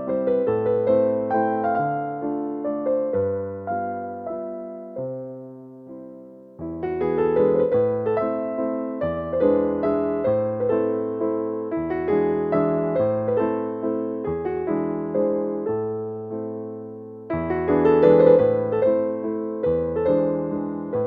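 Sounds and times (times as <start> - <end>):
gentle piano music: 0.0 - 21.0.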